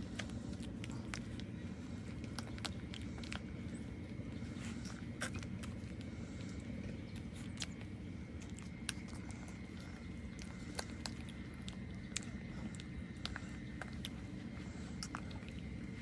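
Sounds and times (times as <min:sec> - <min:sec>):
puppies suckling wet clicks: 0:00.0 - 0:16.0
steady low rumble: 0:00.0 - 0:16.0.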